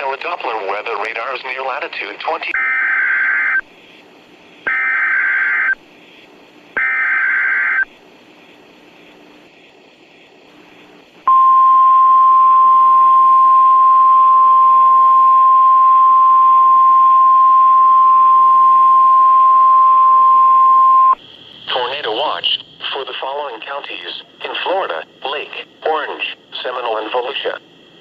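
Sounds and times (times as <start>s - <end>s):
radio hiss: 0.0s - 2.6s, 3.2s - 11.3s, 20.9s - 28.0s
steady warning alarm tone: 2.5s - 3.7s, 4.7s - 5.8s, 6.8s - 8.0s, 11.3s - 21.2s
data tone bursts: 4.7s - 5.8s, 6.8s - 7.9s, 11.3s - 21.2s.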